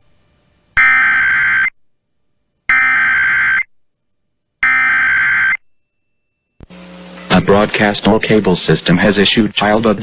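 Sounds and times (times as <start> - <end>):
buzzing electronic data bursts: 0.8 - 1.7, 2.7 - 3.7, 4.6 - 5.6.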